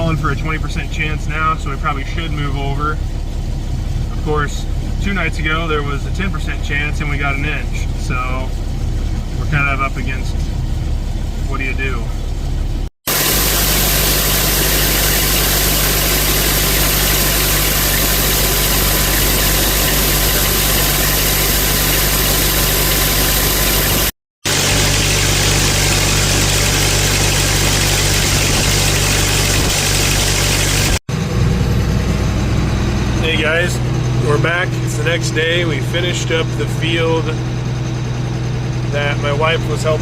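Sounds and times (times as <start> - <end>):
farm machine engine hum: 0.0 - 40.0
mechanical hiss: 13.1 - 25.3.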